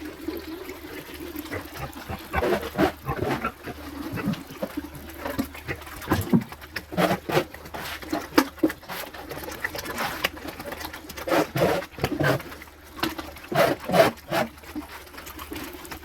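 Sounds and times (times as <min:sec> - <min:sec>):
pigs grunting: 0:01.4 - 0:08.2, 0:11.2 - 0:12.5, 0:13.5 - 0:14.5.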